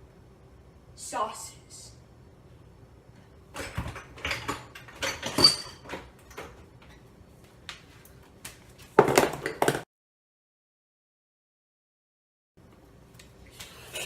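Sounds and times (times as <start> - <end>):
hard objects knocking and clattering: 3.6 - 7.0, 9.0 - 9.9.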